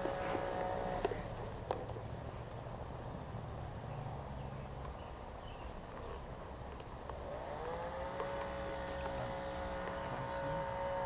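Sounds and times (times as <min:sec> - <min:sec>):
engine revving: 0:00.0 - 0:01.6, 0:07.1 - 0:11.0.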